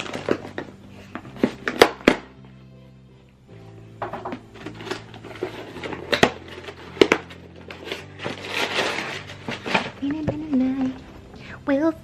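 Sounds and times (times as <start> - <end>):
rustling: 4.5 - 11.2.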